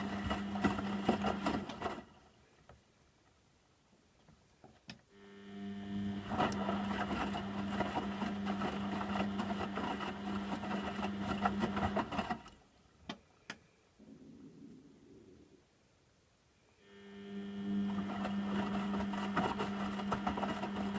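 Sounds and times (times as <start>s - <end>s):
washing machine motor humming: 0.0s - 2.2s, 5.2s - 12.6s, 16.8s - 20.9s
laundry and water tumbling: 0.0s - 2.4s, 6.1s - 13.0s, 17.8s - 20.9s
faint low hum: 12.4s - 20.9s.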